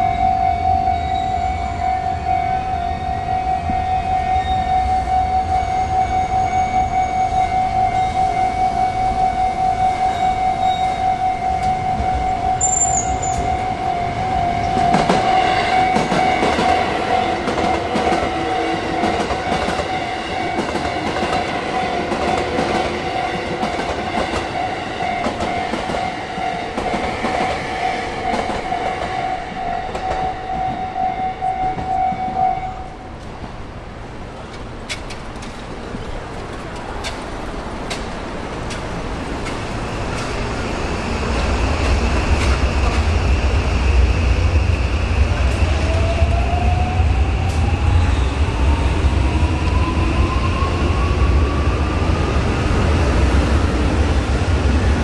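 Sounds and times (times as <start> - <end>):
level-crossing warning bell: 0.0 - 33.2
train wheels clattering: 34.4 - 43.4.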